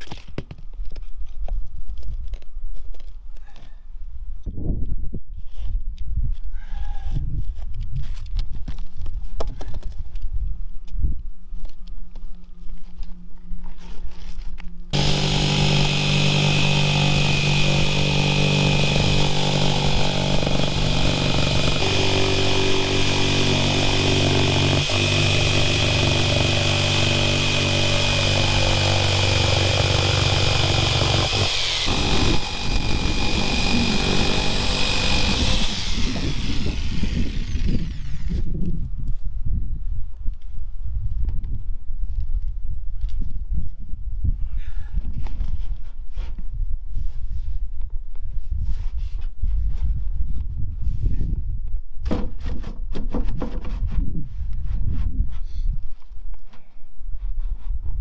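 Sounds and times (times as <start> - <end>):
power tool motor whining: 15.0 - 38.5.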